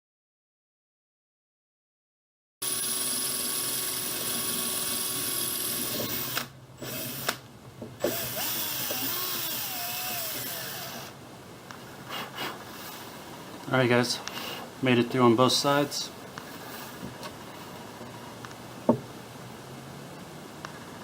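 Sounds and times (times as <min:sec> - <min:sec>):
power drill boring: 0:02.6 - 0:07.4, 0:08.0 - 0:11.2.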